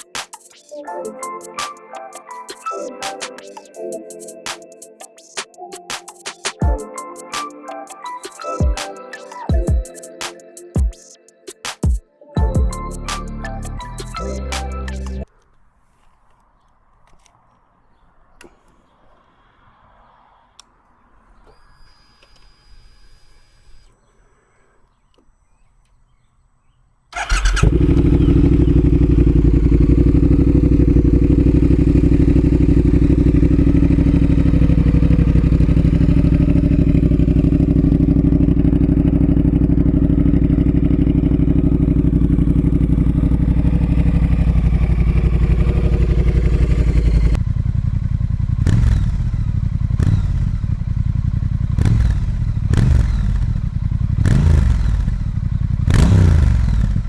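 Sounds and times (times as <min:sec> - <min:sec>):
motorcycle engine starting and idling: 0:27.2 - 0:57.0
motorcycle throttle blips: 0:27.2 - 0:57.0.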